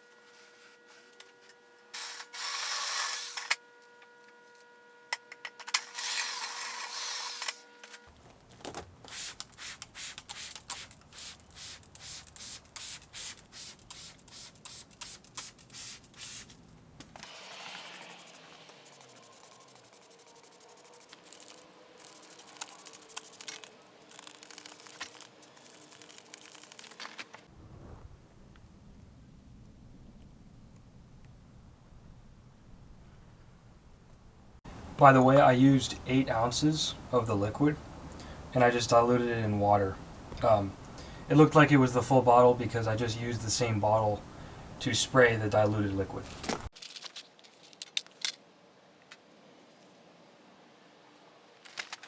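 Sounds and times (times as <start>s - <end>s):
spray bottle spraying: 9.1s - 16.6s.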